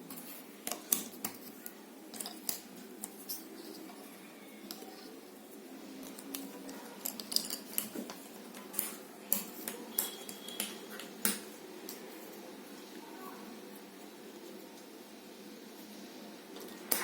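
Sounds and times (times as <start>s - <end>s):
jigsaw puzzle pieces clicking: 6.0s - 12.0s.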